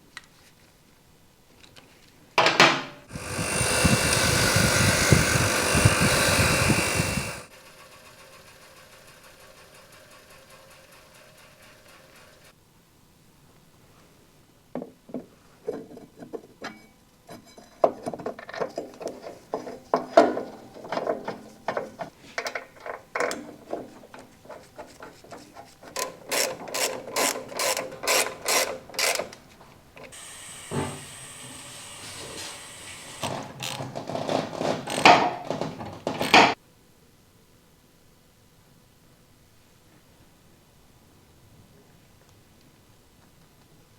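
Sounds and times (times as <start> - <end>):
steady hiss: 3.0 - 12.5, 30.0 - 33.5.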